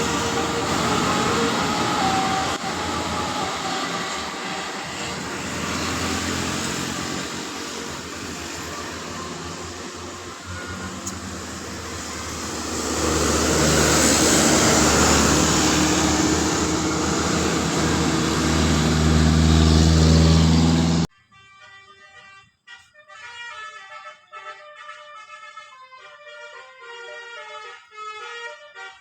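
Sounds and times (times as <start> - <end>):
bus engine and road noise: 0.0 - 21.1
horn tones shifting in pitch: 0.0 - 23.6.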